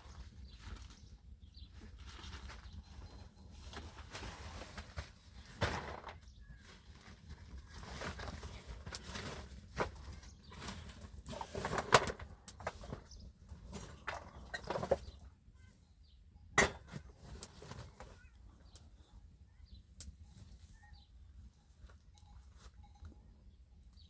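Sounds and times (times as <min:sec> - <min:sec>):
rustling: 0:00.0 - 0:15.2.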